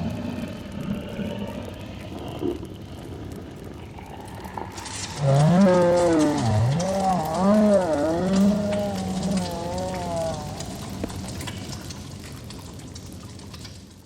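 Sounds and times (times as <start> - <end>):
low breathy rumble: 0.0 - 11.8
growling creature call: 4.0 - 11.6.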